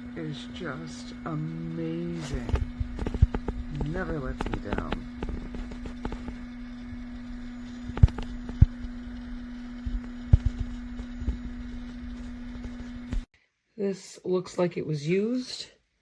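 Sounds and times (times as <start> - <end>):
steady machine hum: 0.0 - 13.3.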